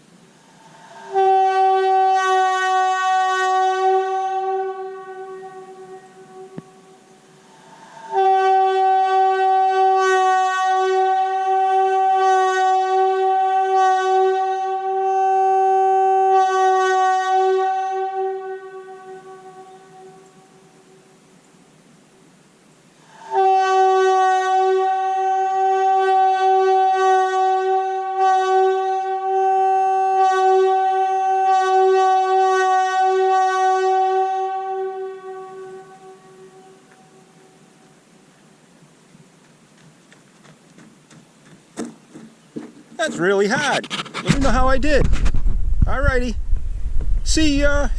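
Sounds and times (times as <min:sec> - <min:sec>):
air horn blast: 0:00.8 - 0:21.0, 0:23.1 - 0:37.5, 0:43.6 - 0:45.4.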